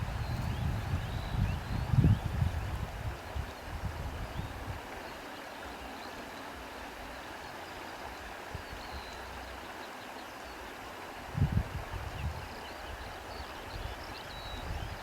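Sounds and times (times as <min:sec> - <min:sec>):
wind buffeting microphone: 0:00.0 - 0:04.8, 0:11.2 - 0:15.0
wind rustling grass: 0:00.0 - 0:05.9, 0:11.1 - 0:15.0.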